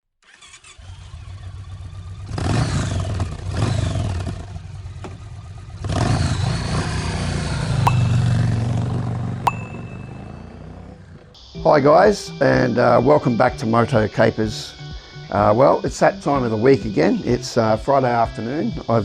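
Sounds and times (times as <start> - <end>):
motorcycle engine revving: 0.3 - 9.4.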